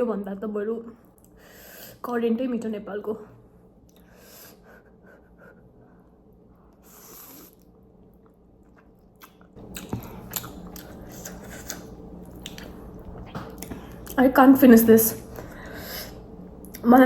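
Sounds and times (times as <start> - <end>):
person chewing noodles: 6.7 - 14.2.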